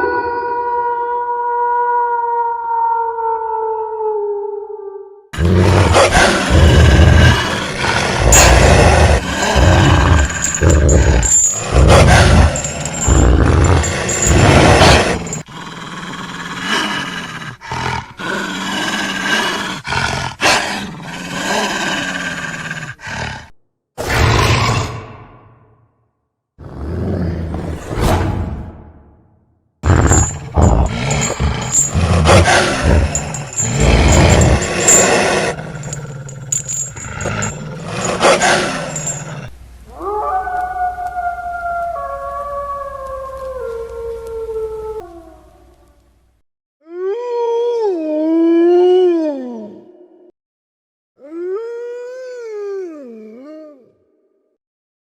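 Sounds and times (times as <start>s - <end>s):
wolf howling: 0.0s - 15.5s, 29.8s - 45.8s
wolf growling and snarling: 5.4s - 25.3s, 26.6s - 28.6s, 29.8s - 39.6s.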